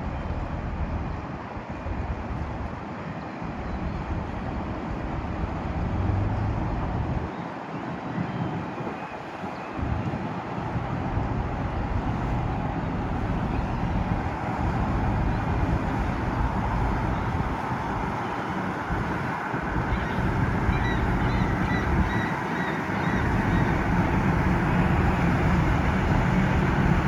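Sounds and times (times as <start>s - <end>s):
low rumble: 0.0s - 2.7s, 3.8s - 7.3s, 10.9s - 18.0s
wind gusting on microphone: 0.0s - 27.0s.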